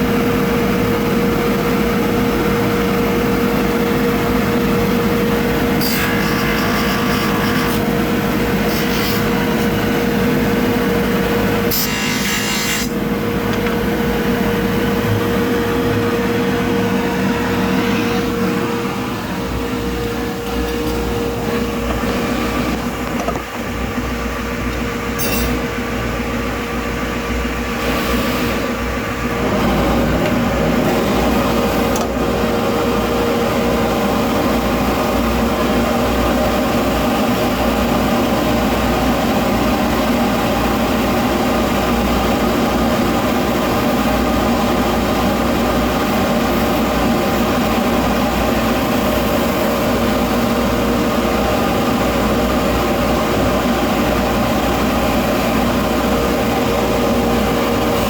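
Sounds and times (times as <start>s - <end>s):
polishing motor humming: 11.9s - 23.0s.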